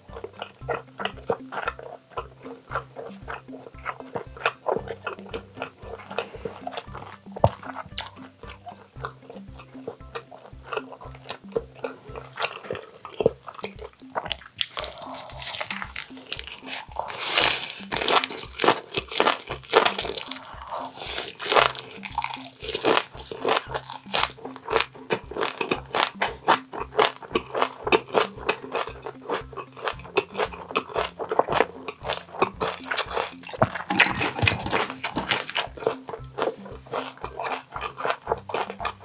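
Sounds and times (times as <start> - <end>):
background music with low beat: 0.0 - 39.0
wet chewing and crunching: 0.0 - 39.0.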